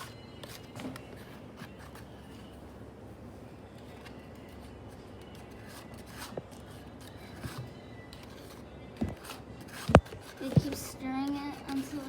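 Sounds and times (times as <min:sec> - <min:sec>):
low background hum: 0:00.0 - 0:12.0
frozen mixture crushed and stirred: 0:08.4 - 0:12.0.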